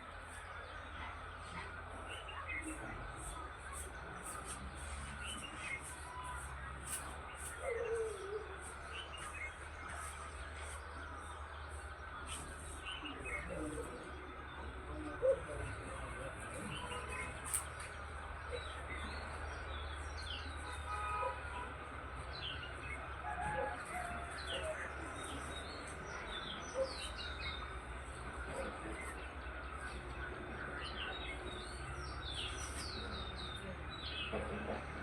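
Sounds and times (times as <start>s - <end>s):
small birds chirping: 23.9s - 35.0s.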